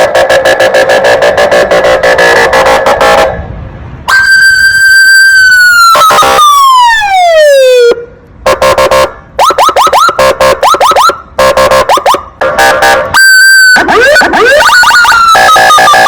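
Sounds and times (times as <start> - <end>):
electronic police siren: 4.1 - 16.0.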